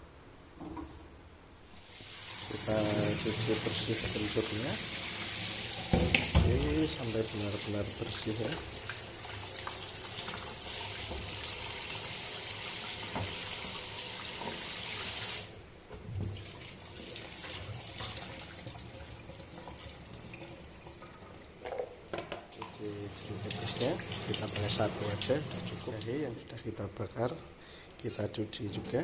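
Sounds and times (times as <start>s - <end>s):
water running from tap: 1.8s - 15.5s, 16.3s - 21.2s, 22.6s - 26.2s.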